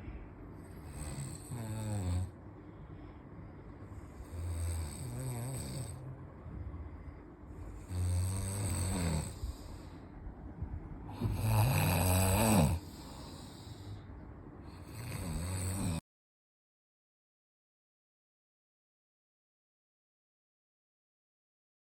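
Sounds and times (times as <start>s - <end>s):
quiet breathing: 0.0s - 16.0s
person snoring: 0.6s - 2.4s, 3.9s - 6.2s, 7.7s - 10.0s, 11.1s - 14.1s, 14.7s - 16.0s.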